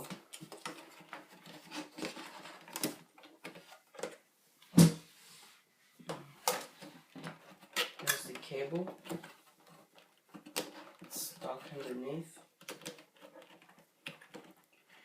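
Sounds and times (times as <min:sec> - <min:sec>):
hands handling plastic and metal parts: 0:06.1 - 0:15.0.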